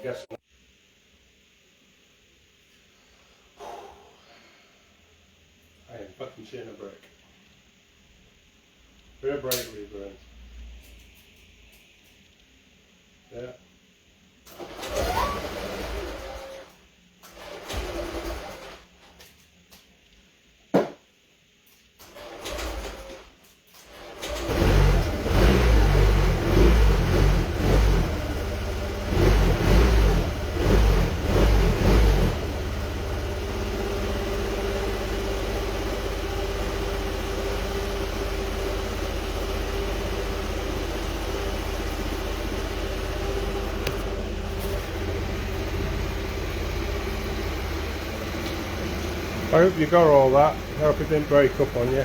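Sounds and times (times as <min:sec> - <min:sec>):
scooter engine starting and idling: 0:14.5 - 0:16.7, 0:17.3 - 0:19.0, 0:22.0 - 0:52.0.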